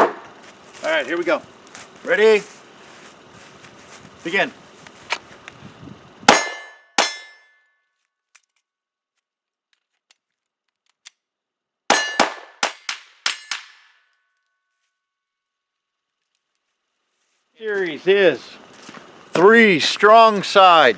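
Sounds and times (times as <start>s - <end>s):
metallic ringing: 6.3s - 7.8s
pistol shots: 11.9s - 13.7s.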